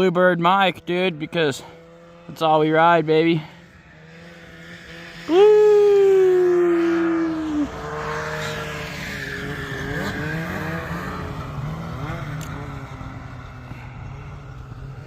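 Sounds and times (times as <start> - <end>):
snowmobile engines revving: 0.0 - 15.0
person shouting: 5.2 - 7.9.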